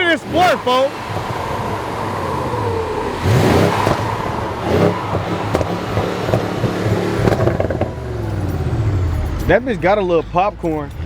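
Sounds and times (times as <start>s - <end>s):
exhaust crackles and pops: 0.0s - 8.8s
car engine revving: 0.0s - 11.0s.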